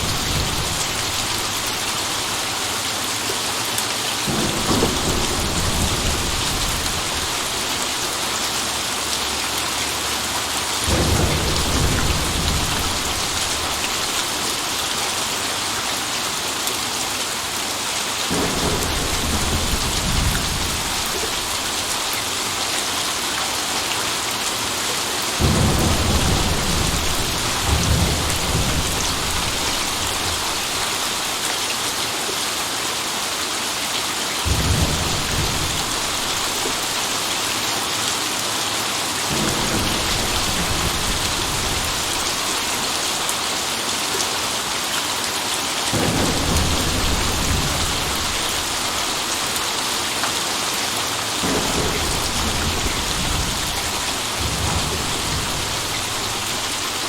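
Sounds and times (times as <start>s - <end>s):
thunder rumbling: 0.0s - 3.3s, 4.2s - 8.3s, 10.8s - 15.1s, 18.3s - 22.6s, 25.4s - 31.5s, 34.4s - 37.6s, 39.3s - 43.4s, 46.0s - 49.7s, 51.4s - 57.0s
heavy rain hissing: 0.0s - 57.0s.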